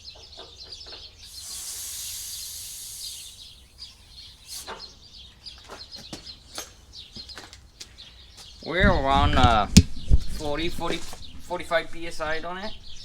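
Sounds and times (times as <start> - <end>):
birds chirping: 0.0 - 13.0
air hissing from valve: 1.2 - 4.9.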